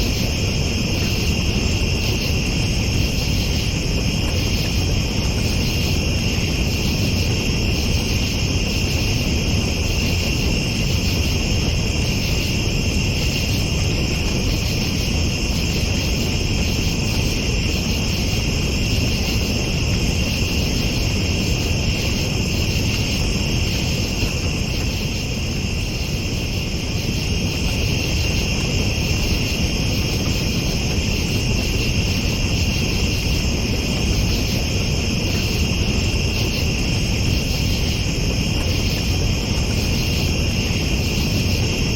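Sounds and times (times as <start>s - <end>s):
night insects chirring: 0.0s - 41.9s.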